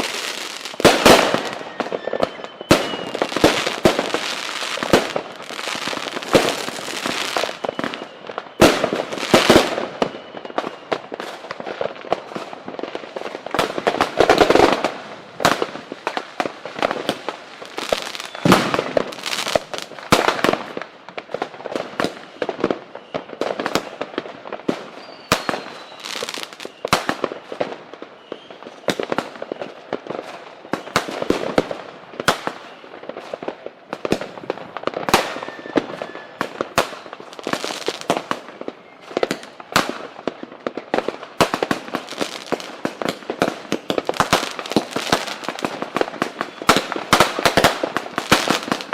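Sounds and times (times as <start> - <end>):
firework whistles: 0.0 - 11.4, 17.6 - 20.0, 24.8 - 27.2, 28.0 - 29.8, 35.0 - 40.0, 43.5 - 48.9
fireworks bangs and crackling: 0.0 - 48.9.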